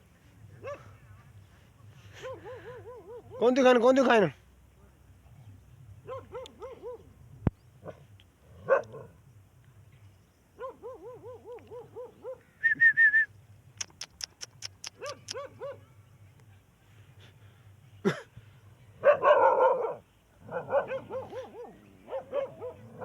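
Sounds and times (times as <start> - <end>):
dog barking: 0.6 - 0.9, 2.2 - 3.6, 6.0 - 7.1, 7.8 - 9.1, 10.6 - 12.5, 14.9 - 15.9, 19.0 - 23.0
quick sharp ticks: 13.8 - 15.4
sharp click: 13.8 - 15.4
dog yelping: 14.0 - 15.8, 19.1 - 23.0.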